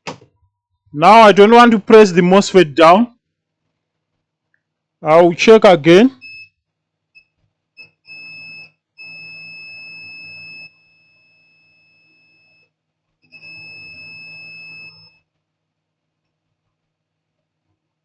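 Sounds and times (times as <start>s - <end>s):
multimeter continuity beeping: 7.2s - 12.6s, 13.3s - 15.2s.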